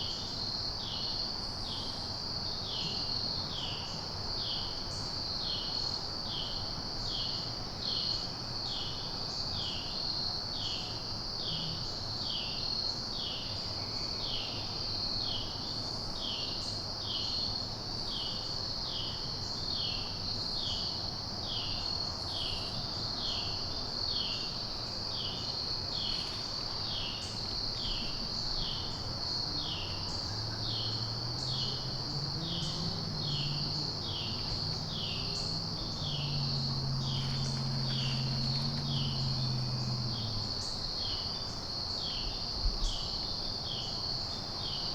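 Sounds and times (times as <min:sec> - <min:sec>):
crickets trilling: 0:00.0 - 0:44.9
faint low hum: 0:26.0 - 0:43.0.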